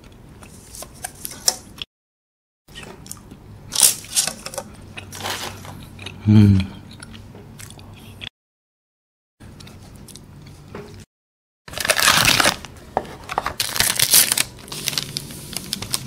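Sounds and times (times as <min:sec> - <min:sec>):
snack packaging crinkling: 0:03.7 - 0:05.7, 0:11.7 - 0:16.0.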